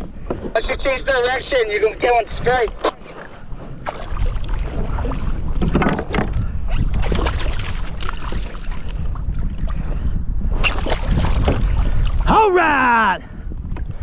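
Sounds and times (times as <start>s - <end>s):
steady low rumble: 0.0s - 12.3s
water splashing against kayak hull: 2.0s - 12.3s.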